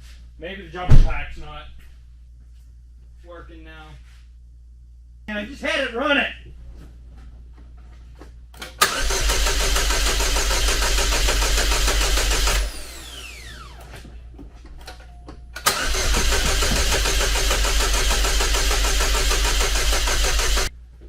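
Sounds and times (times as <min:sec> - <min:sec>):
car starter cranking: 0:08.6 - 0:13.8, 0:15.6 - 0:20.7.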